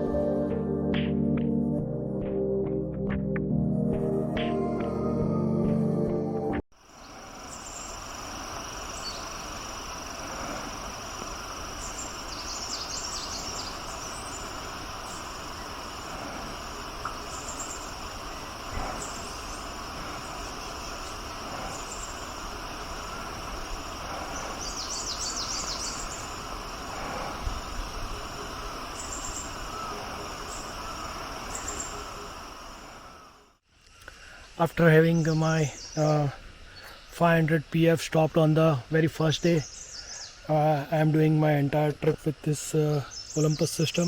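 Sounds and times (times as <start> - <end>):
high-pitched insect drone: 6.8 - 44.0
small birds twittering: 6.9 - 32.9, 33.8 - 44.0
faint bird chirps: 8.8 - 9.6, 11.7 - 27.2, 28.0 - 32.5, 33.8 - 37.2, 39.4 - 41.5.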